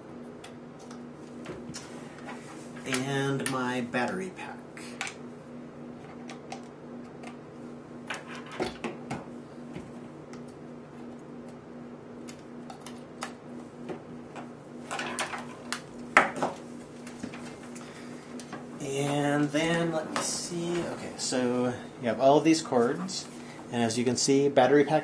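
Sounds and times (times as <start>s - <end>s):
steady low hum: 0.0s - 25.0s
cables clicking and tapping: 0.4s - 1.1s, 6.0s - 7.4s, 12.2s - 17.8s.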